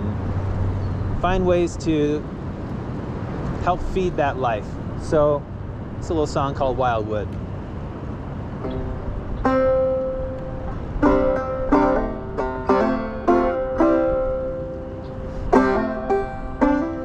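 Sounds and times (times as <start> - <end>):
banjo picking: 8.6 - 17.0.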